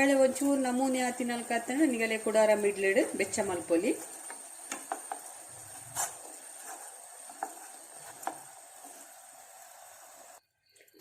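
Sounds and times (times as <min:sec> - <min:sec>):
faint steady hiss: 0:00.0 - 0:11.0.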